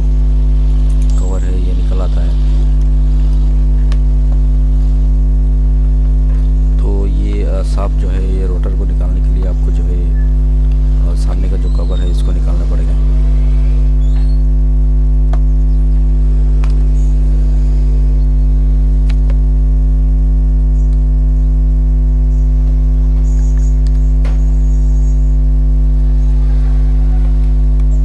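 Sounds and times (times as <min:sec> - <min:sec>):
electrical mains hum: 0:00.0 - 0:28.0.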